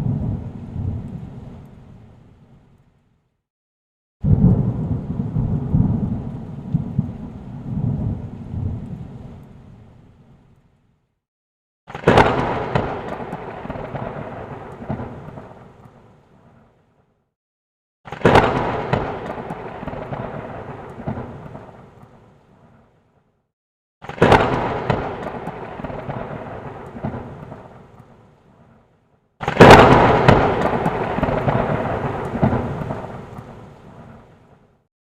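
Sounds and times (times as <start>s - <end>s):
thunder cracking and rumbling: 0.0s - 2.0s, 4.2s - 9.7s, 11.9s - 16.6s, 18.1s - 22.8s, 24.0s - 28.7s, 29.4s - 34.6s.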